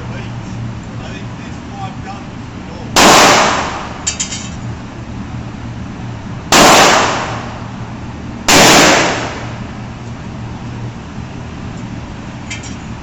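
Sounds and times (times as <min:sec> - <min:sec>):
handgun shots: 0:03.0 - 0:03.9, 0:06.6 - 0:07.5, 0:08.5 - 0:09.5.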